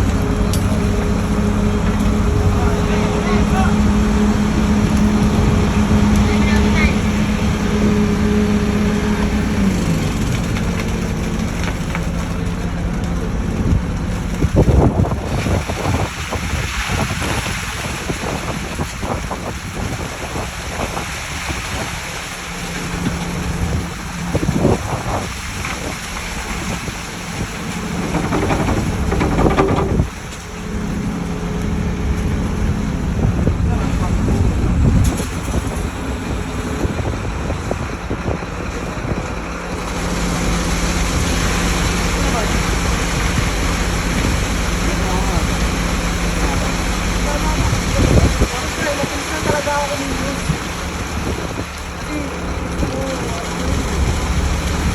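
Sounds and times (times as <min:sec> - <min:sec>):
truck engine running: 0:00.0 - 0:16.4, 0:22.0 - 0:54.9
wind buffeting microphone: 0:00.0 - 0:22.1, 0:22.9 - 0:39.9, 0:41.0 - 0:54.9
rushing splashing wash: 0:00.0 - 0:54.9
low hum: 0:26.6 - 0:37.5.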